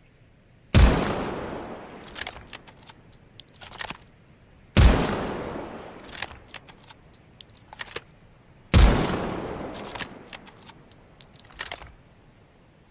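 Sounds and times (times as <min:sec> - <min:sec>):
rifle shot with echo: 0:00.8 - 0:02.7, 0:04.8 - 0:06.8, 0:08.7 - 0:10.7
metallic clicks of rifle breech: 0:02.0 - 0:04.2, 0:06.0 - 0:08.2, 0:09.7 - 0:12.0.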